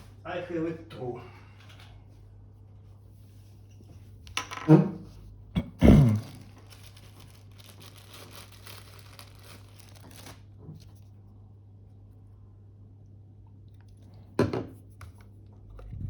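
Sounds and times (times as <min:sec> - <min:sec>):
low electrical hum: 0:00.0 - 0:16.0
scratching on plastic cable: 0:06.2 - 0:11.0.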